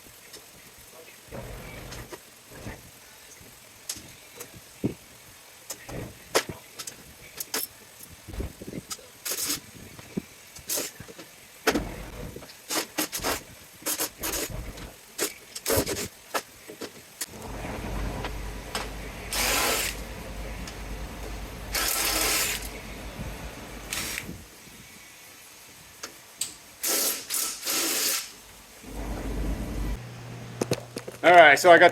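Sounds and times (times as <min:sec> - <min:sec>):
small power tool motor: 0:19.3 - 0:20.0, 0:21.7 - 0:22.7.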